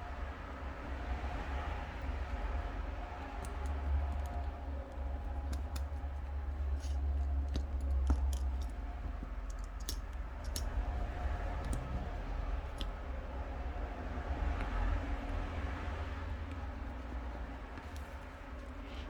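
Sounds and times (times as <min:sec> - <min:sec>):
steady low hum: 0:00.0 - 0:19.0
plastic tool clicking and tapping: 0:03.4 - 0:13.0.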